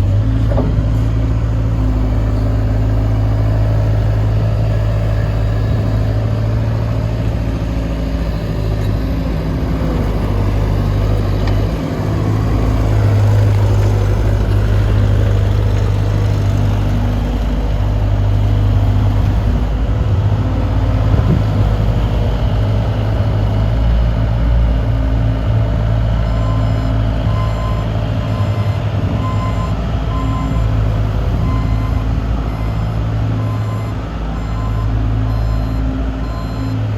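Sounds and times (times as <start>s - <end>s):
diesel engine running: 0.0s - 36.9s
reversing alarm beeping: 1.7s - 7.3s, 8.0s - 12.4s, 26.2s - 36.8s.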